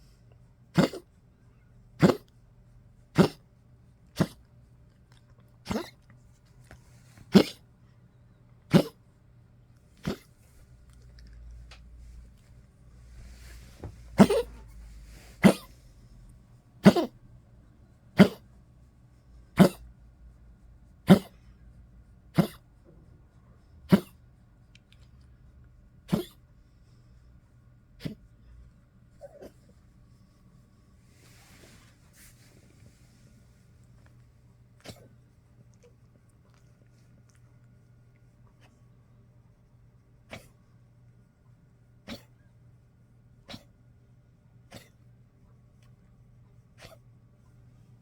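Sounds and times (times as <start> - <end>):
dog coughing: 0.7 - 1.2, 2.0 - 2.3, 3.1 - 3.5, 4.1 - 4.5, 5.6 - 6.1, 7.2 - 7.7, 8.7 - 9.0, 10.0 - 10.4, 13.3 - 15.9, 16.8 - 17.2, 18.1 - 18.5, 19.5 - 19.9, 21.0 - 21.5, 22.3 - 22.7, 23.9 - 24.2, 26.0 - 26.5, 28.0 - 28.2, 29.2 - 29.7, 34.8 - 35.2, 40.3 - 40.6, 42.0 - 42.5, 43.4 - 43.8, 44.7 - 45.1, 46.8 - 47.0.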